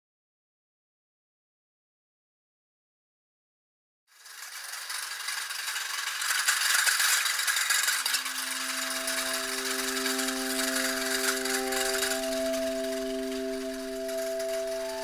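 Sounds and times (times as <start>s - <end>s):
dense fine rattling and clicking: 4.1s - 15.0s
steady held drone chord: 7.6s - 15.0s.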